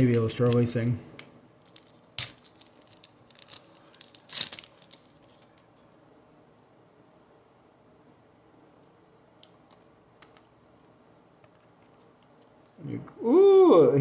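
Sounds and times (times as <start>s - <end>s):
wrapper crackling: 1.6s - 5.7s
wrapper tearing rustle: 1.6s - 5.7s.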